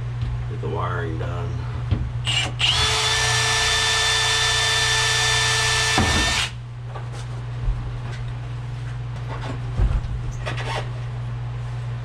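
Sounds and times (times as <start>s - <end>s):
electric drill spinning: 2.3s - 6.6s.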